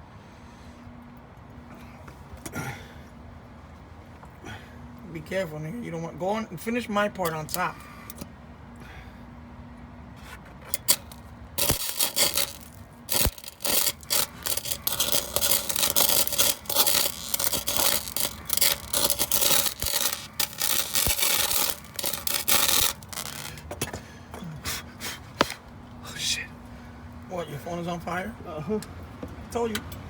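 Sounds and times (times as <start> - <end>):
electric arc welding crackling: 10.8 - 23.7.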